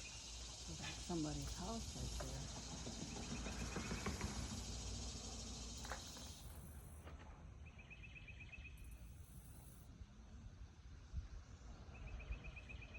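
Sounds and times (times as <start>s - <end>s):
hiss: 0.0s - 7.0s.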